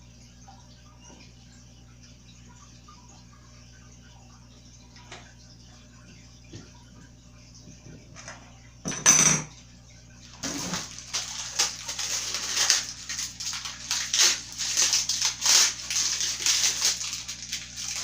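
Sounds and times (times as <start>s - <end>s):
plastic packaging ripping: 10.4s - 18.0s
plastic wrap crinkling: 10.4s - 18.0s.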